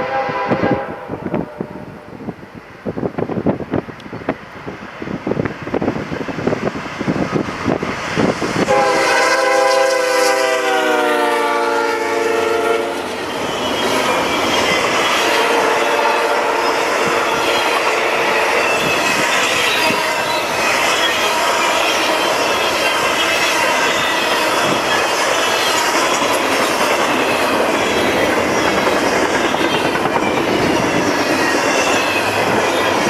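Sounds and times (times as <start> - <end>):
locomotive air horn blast: 0.0 - 2.2, 8.6 - 13.2, 15.2 - 17.3
wind on microphone: 0.0 - 10.0, 14.0 - 21.0, 22.4 - 25.4, 26.0 - 33.0
train rail and wheel noise: 0.0 - 33.0
high wheel squeal: 12.2 - 33.0.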